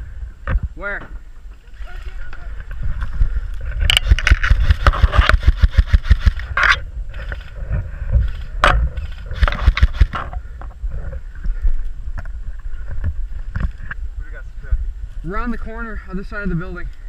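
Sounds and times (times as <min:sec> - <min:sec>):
camera jostling thuds and scraping: 0:02.1 - 0:14.0.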